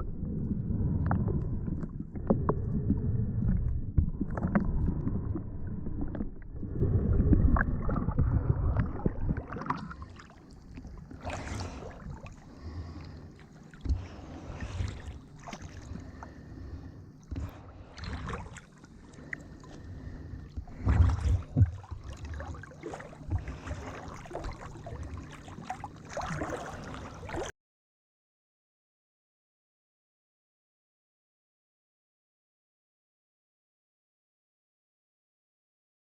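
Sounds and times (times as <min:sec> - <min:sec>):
water slapping boat hull: 0:07.0 - 0:27.5.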